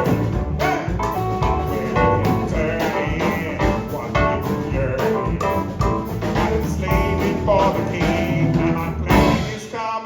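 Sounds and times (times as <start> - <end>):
live blues-rock band playing: 0.0 - 9.6
drum kit: 0.0 - 9.9.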